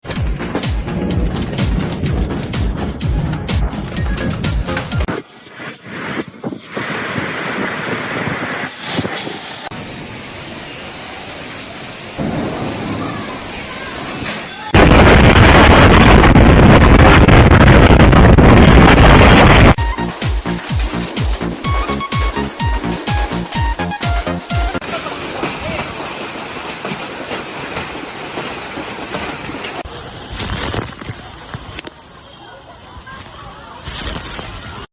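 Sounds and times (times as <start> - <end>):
strong wind buffeting microphone: 0.4 - 10.6, 11.9 - 19.8.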